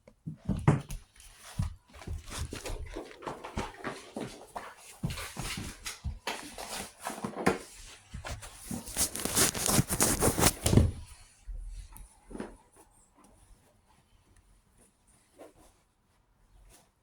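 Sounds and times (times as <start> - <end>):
puppies scratching and tapping: 0.3 - 10.9.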